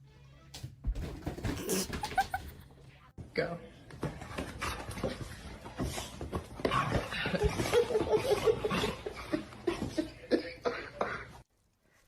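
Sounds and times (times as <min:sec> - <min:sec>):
person laughing: 0:01.6 - 0:02.6.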